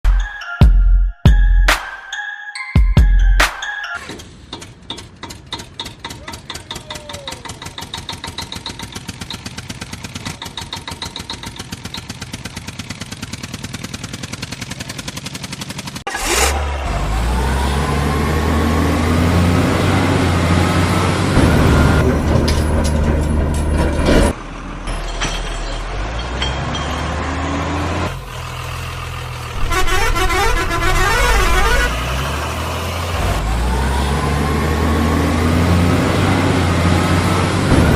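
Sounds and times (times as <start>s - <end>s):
loud truck engine running: 4.0s - 37.9s
rattling engine idle: 4.1s - 16.8s
truck horn honking: 29.5s - 32.6s.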